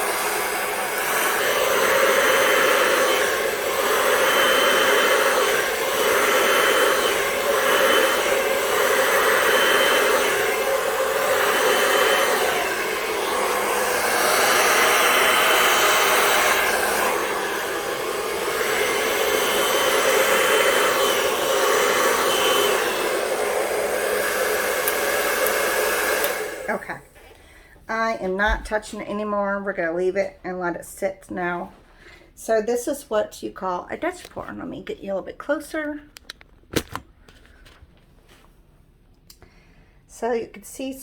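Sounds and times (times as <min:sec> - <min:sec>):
hair dryer blowing air: 0:00.0 - 0:27.2.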